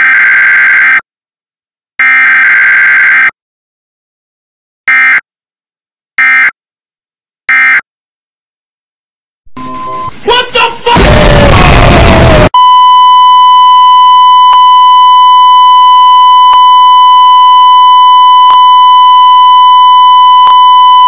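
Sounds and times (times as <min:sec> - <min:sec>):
harsh steady test tone: 0:09.5 - 0:21.0.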